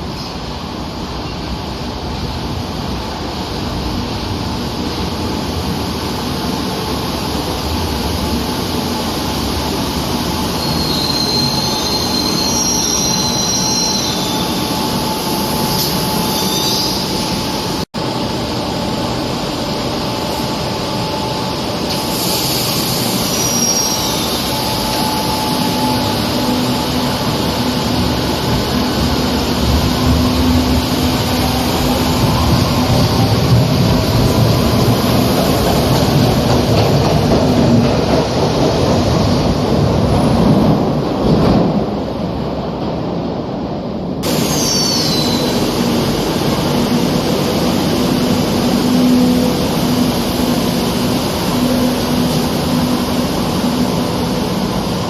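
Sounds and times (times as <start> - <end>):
train rumbling on rails: 0.0 - 55.0
high-pitched wheel squeal: 10.6 - 14.8, 15.6 - 17.4, 23.2 - 26.8, 44.4 - 45.6.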